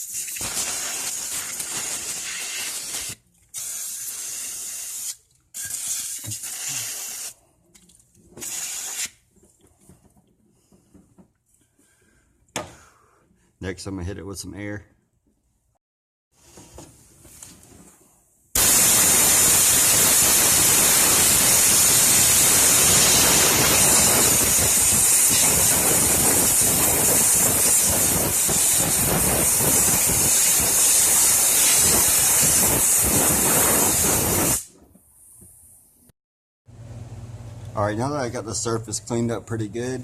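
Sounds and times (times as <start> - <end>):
compressed air hissing: 0.2 - 7.4, 18.6 - 35.6.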